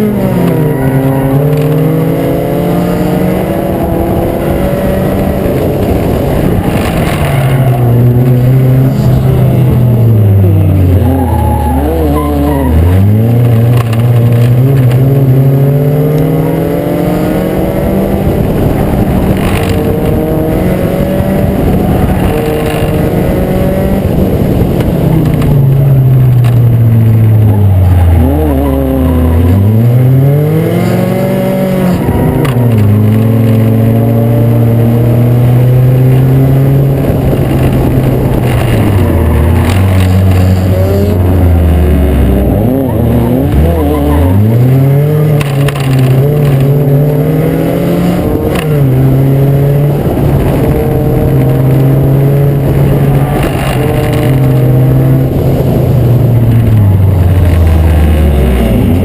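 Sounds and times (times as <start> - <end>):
race car engine accelerating: 0.0 - 59.0.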